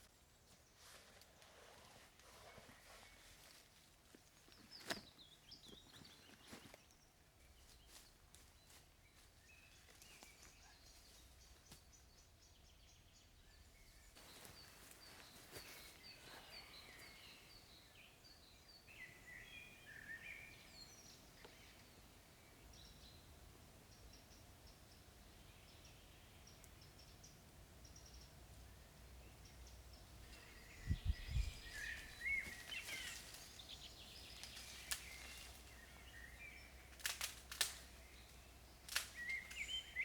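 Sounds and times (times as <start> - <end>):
small birds chirping: 0.0 - 40.0
sharp clicks or snaps: 36.9 - 37.9.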